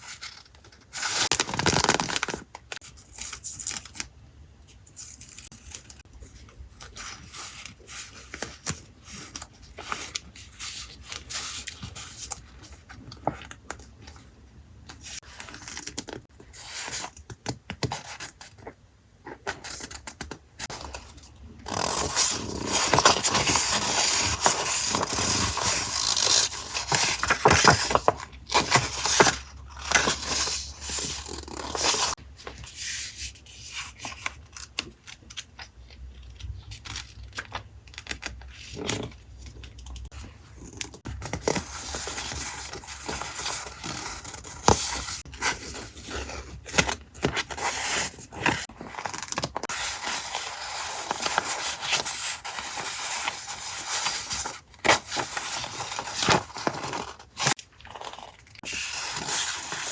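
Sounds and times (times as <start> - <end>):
paper rustling and crinkling: 21.7 - 59.9.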